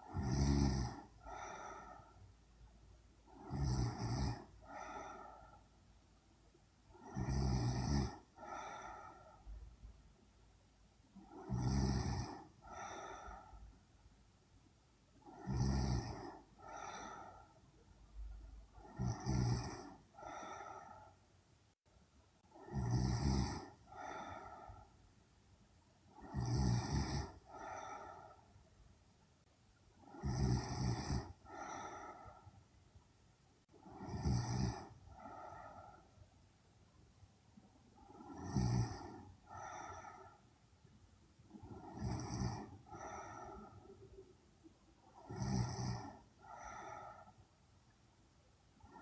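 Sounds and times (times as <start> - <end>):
woman snoring: 0.0 - 2.2, 3.3 - 5.6, 6.9 - 9.5, 11.1 - 13.7, 15.2 - 17.6, 18.7 - 21.2, 22.5 - 24.9, 26.1 - 28.4, 30.0 - 32.5, 33.7 - 36.1, 38.0 - 40.4, 41.5 - 44.4, 45.0 - 47.4
soft breath out: 1.2 - 2.3, 31.4 - 32.6, 42.6 - 44.4, 46.1 - 47.5.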